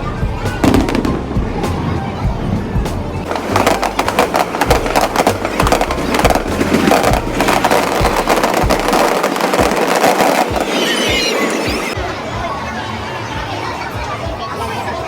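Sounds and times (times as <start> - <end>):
fireworks crackling and popping: 0.6 - 1.3, 3.2 - 12.0.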